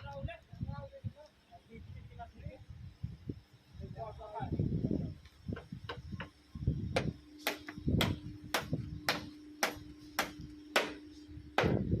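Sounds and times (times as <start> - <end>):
low hum: 4.6 - 12.0
hammer blows: 7.0 - 11.9.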